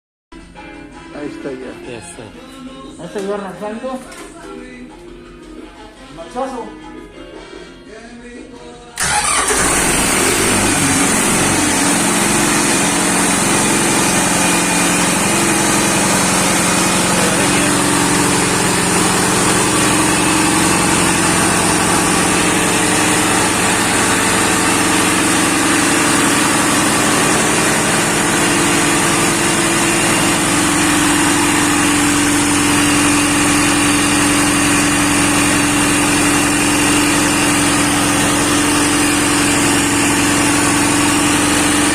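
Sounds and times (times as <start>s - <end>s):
engine running steadily: 9.0s - 41.9s.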